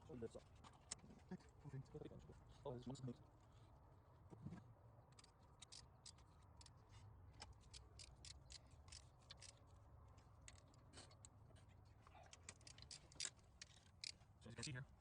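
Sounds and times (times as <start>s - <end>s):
faint small clicks and ticks: 5.1s - 14.8s.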